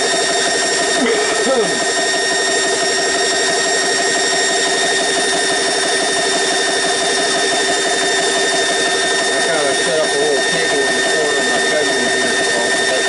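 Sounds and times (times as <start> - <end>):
air compressor pulsing hum: 0.0 - 13.0.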